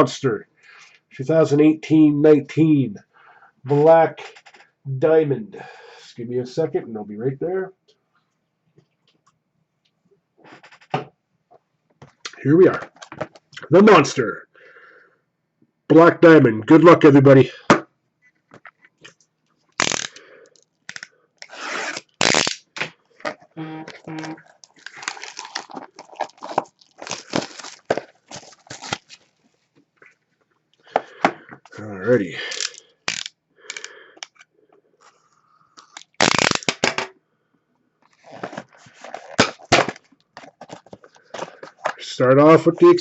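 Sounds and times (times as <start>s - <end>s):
packaging tearing and crinkling: 19.7s - 23.4s, 24.1s - 29.4s, 32.5s - 33.9s, 35.8s - 37.0s, 38.1s - 41.8s.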